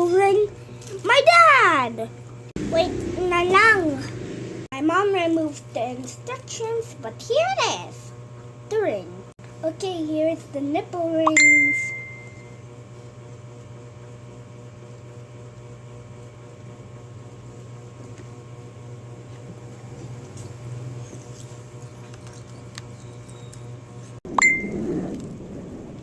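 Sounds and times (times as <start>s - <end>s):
low electrical hum: 0.0s - 26.0s
high notification ding: 11.3s - 12.5s.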